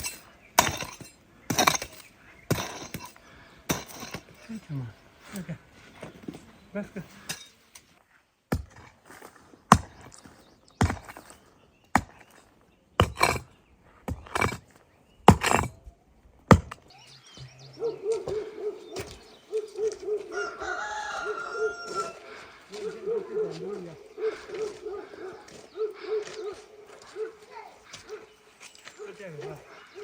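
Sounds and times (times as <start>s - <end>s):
sharp chopping knocks: 9.7s - 10.0s, 10.8s - 11.2s, 16.5s - 16.8s.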